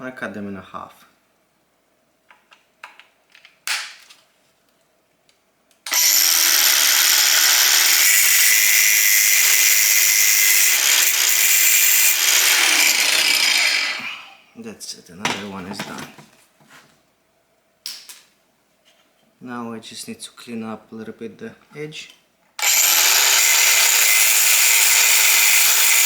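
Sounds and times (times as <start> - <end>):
power tool cutting: 5.9 - 14.4, 22.6 - 26.0.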